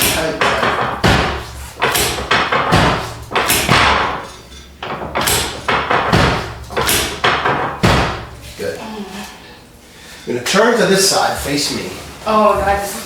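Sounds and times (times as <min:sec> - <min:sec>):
table sections slamming down: 0:00.0 - 0:08.4.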